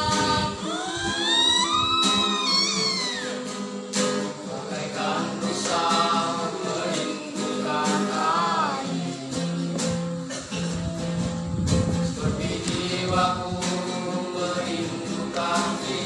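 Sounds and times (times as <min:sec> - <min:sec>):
person singing: 0:00.0 - 0:03.6, 0:04.2 - 0:16.0
plucked instrumental accompaniment: 0:00.0 - 0:16.0.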